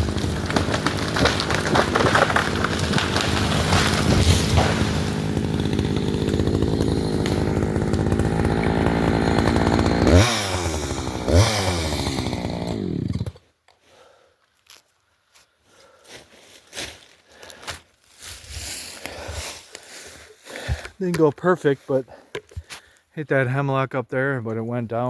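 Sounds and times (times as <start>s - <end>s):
chainsaw cutting into tree: 0.0s - 13.4s.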